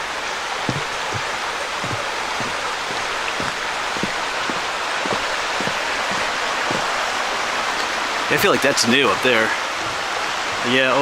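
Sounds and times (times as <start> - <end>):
creek water rushing: 0.0 - 11.0
footsteps thudding: 0.6 - 7.5, 8.5 - 10.2.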